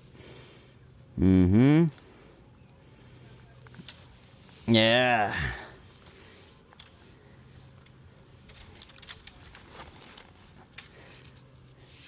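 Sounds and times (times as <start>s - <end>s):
light crackles: 1.9s - 4.7s, 5.4s - 12.0s
rustling twigs and brush: 1.9s - 12.0s.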